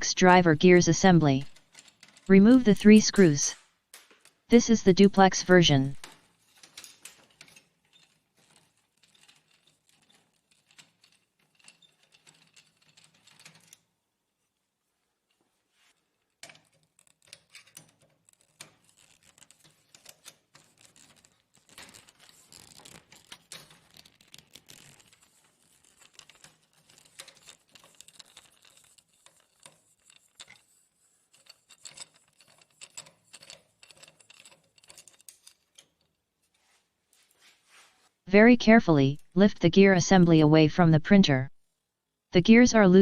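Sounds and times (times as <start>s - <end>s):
plastic and metal parts handled: 16.4s - 36.6s.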